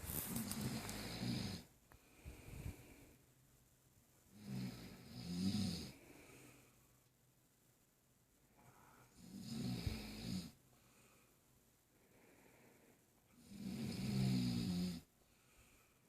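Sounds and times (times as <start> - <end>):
person snoring: 0.2 - 1.7, 4.3 - 6.6, 9.0 - 10.6, 13.3 - 15.1.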